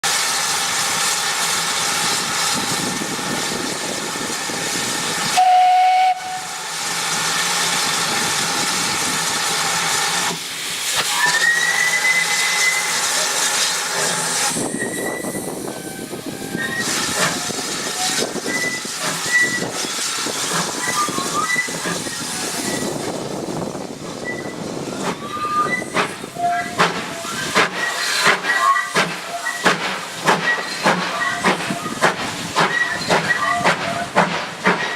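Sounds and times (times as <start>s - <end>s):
steam locomotive hissing: 0.0s - 34.9s
wind buffeting microphone: 2.1s - 5.4s, 14.5s - 27.6s
steam whistle: 5.3s - 6.6s.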